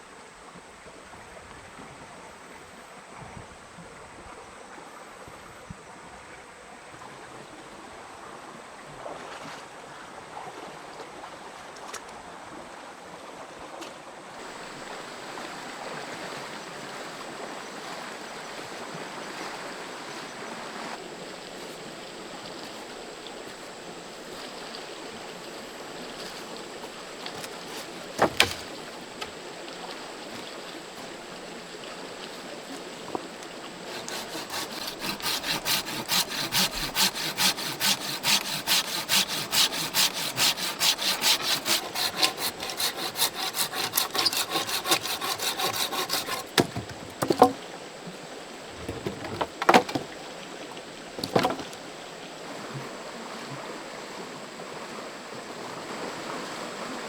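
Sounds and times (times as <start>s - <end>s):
stream rushing: 14.4s - 53.1s
hand saw cutting wood: 27.2s - 29.3s, 32.8s - 47.6s, 48.8s - 50.1s, 51.2s - 51.8s
wood knocks: 27.3s - 29.3s, 33.9s - 47.6s, 48.8s - 50.1s, 51.2s - 51.8s.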